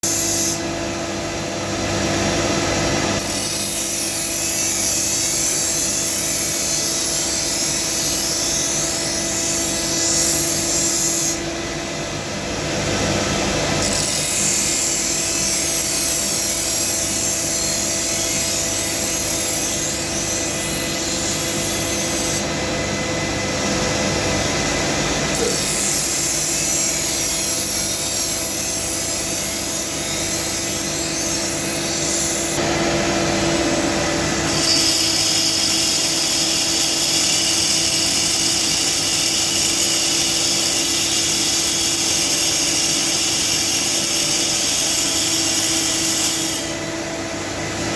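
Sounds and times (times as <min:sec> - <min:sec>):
blade grinding hiss: 0:00.0 - 0:00.7, 0:03.2 - 0:11.5, 0:13.7 - 0:22.6, 0:25.3 - 0:32.6, 0:34.4 - 0:46.8
grinder motor hum: 0:00.0 - 0:47.9.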